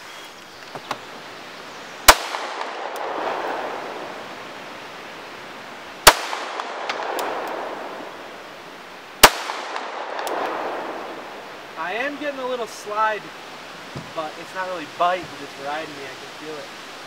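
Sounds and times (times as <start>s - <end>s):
pistol shots with echo: 2.1s - 3.8s, 6.0s - 8.0s, 9.2s - 11.2s.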